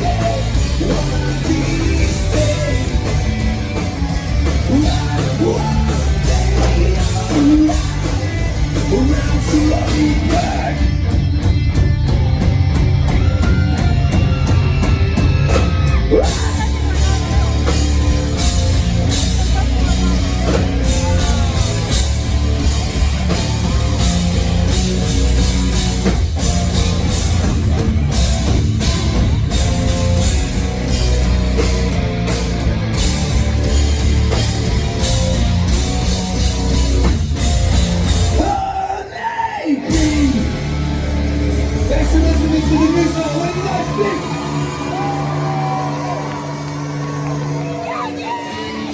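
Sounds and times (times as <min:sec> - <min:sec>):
person singing: 0:00.0 - 0:03.6, 0:04.4 - 0:10.9
drum kit: 0:00.0 - 0:39.2, 0:39.8 - 0:48.9
bass guitar: 0:00.0 - 0:48.9
distorted electric guitars: 0:00.0 - 0:48.9.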